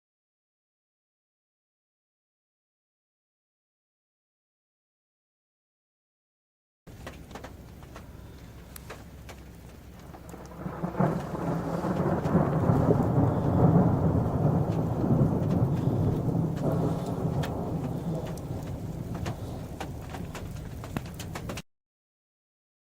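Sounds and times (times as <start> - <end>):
thunder rumbling: 6.9 - 21.6.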